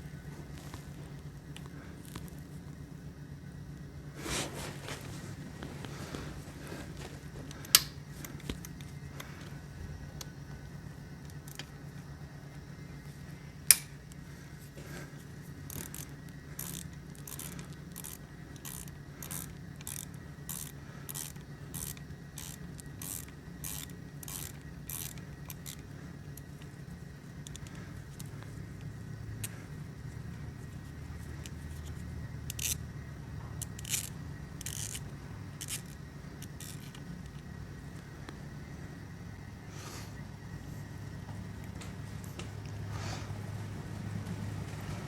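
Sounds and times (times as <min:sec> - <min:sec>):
steady low hum: 0:00.0 - 0:45.0
sharp metallic clicks: 0:07.5 - 0:09.5, 0:13.6 - 0:14.2
ratchet clicking: 0:15.6 - 0:26.7, 0:27.4 - 0:29.6, 0:30.8 - 0:32.9, 0:33.6 - 0:37.4.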